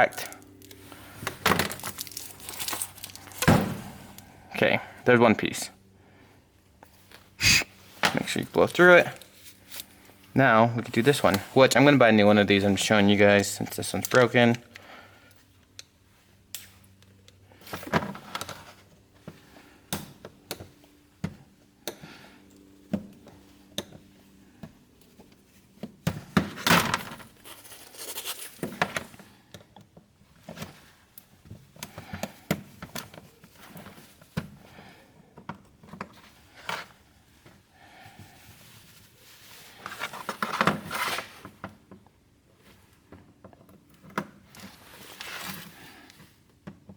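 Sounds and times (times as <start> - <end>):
insulation crinkling: 0.1 - 3.5.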